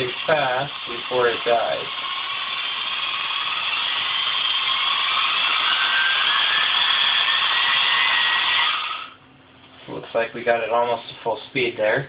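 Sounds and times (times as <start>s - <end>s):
drill motor whining: 0.0s - 9.2s.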